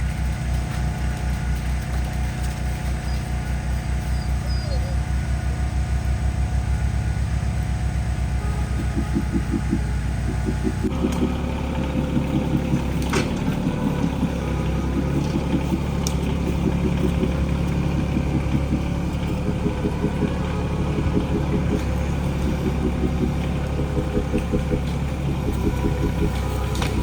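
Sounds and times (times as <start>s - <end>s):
tractor engine running: 0.0s - 27.0s
sharp clicks: 8.7s - 27.0s.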